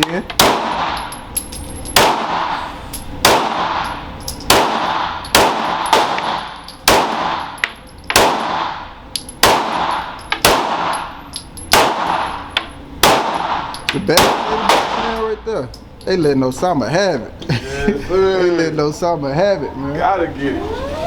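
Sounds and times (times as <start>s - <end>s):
handgun shots with ringing echo: 0.3s - 2.6s, 3.2s - 15.3s.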